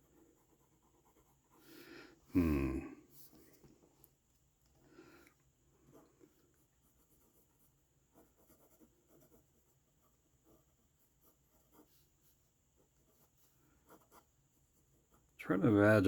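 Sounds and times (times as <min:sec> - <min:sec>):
drawing tool scratching: 0:05.8 - 0:15.2.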